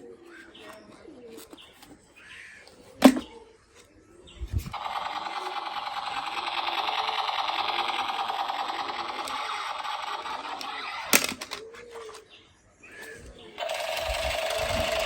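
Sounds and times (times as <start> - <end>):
rapid mechanical rattle: 4.7 - 12.2, 13.6 - 15.0.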